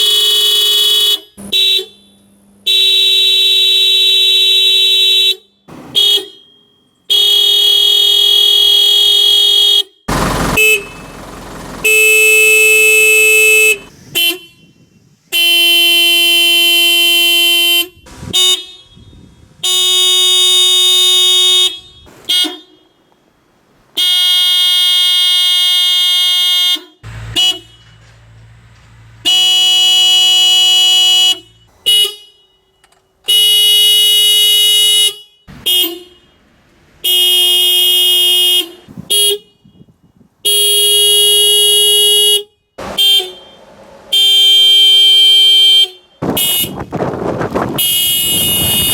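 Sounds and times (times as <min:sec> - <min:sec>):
car horns blasting: 0:00.0 - 0:48.9.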